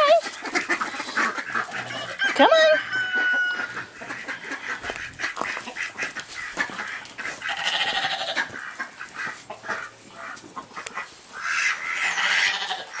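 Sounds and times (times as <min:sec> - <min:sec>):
farm animal wavering cry: 0:00.0 - 0:10.4, 0:11.4 - 0:13.0.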